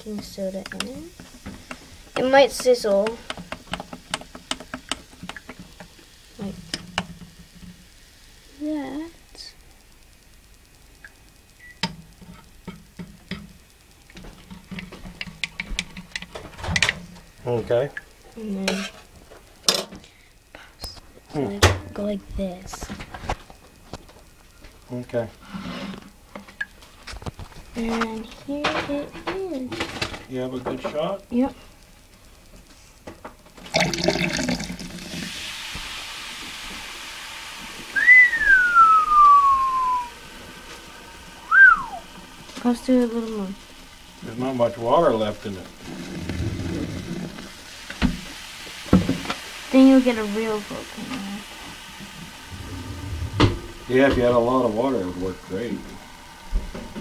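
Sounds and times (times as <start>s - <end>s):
baking soda and vinegar fizzing: 0.0s - 9.6s, 33.6s - 57.0s
liquid splashing: 33.7s - 35.3s
whistled note sliding down: 37.9s - 40.2s, 41.4s - 42.1s.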